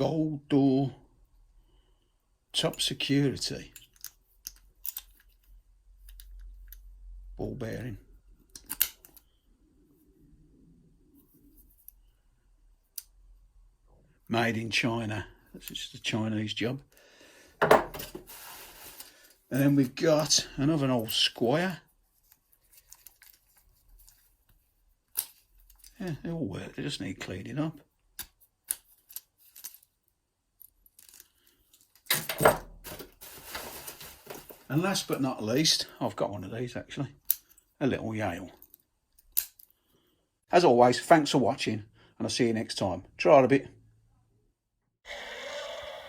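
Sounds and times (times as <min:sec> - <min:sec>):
padlock metallic clicks: 0:08.5 - 0:09.2
faint rubbing: 0:18.2 - 0:19.7.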